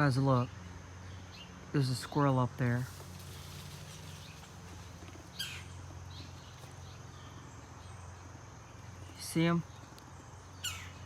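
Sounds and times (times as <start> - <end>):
bird chirps: 3.8 - 11.0.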